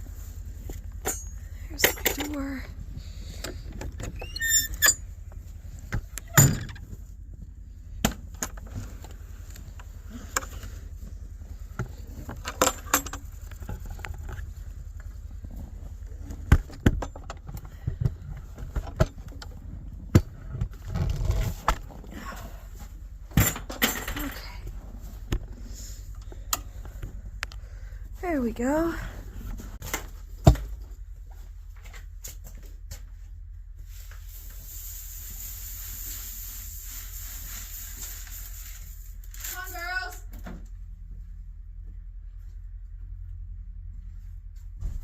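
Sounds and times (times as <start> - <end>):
door squeak: 4.0 - 5.0
barn door clanking and rattling: 6.1 - 6.9.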